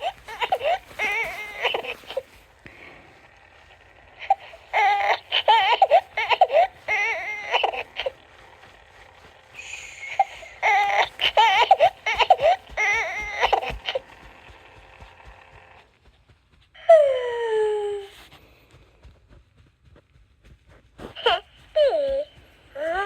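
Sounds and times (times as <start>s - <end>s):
baby doll crying: 0.0s - 2.4s, 4.2s - 8.2s, 9.6s - 14.2s, 21.2s - 23.0s.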